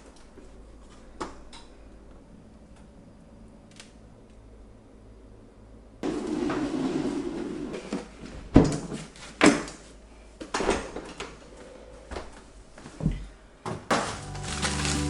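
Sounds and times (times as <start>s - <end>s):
knocks and clunks of items: 13.0s - 15.0s.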